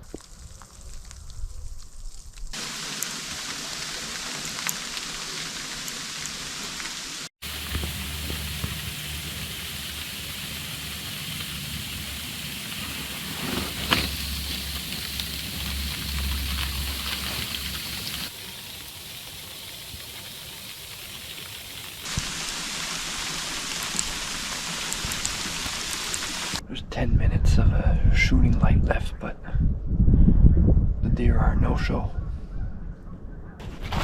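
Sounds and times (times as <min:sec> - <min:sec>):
rain falling: 0:02.5 - 0:26.6.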